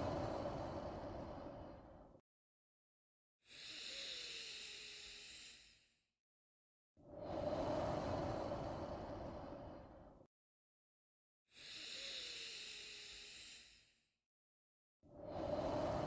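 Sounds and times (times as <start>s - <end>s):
slow deep human breathing: 0.0s - 2.2s, 3.5s - 5.9s, 7.0s - 10.3s, 15.1s - 16.0s.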